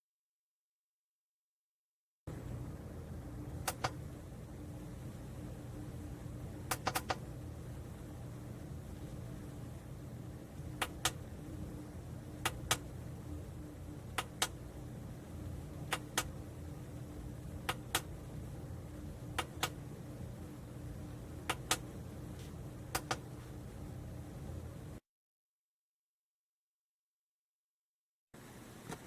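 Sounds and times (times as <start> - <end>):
low steady hum: 2.3 - 25.0
sharp clicks in pairs: 3.6 - 4.0, 6.7 - 7.2, 15.9 - 16.3, 19.4 - 19.8, 21.5 - 21.9, 22.9 - 23.3.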